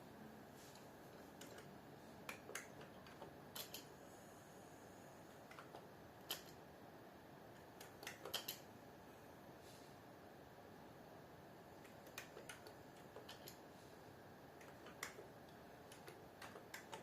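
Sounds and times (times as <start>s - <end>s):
background hiss: 0.0s - 17.0s
keyboard typing clicks: 1.4s - 3.9s, 7.7s - 8.6s, 11.8s - 13.6s, 14.6s - 17.0s.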